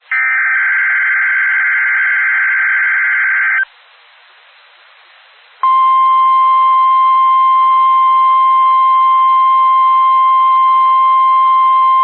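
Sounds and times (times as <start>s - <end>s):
faint radio hiss: 3.3s - 10.2s.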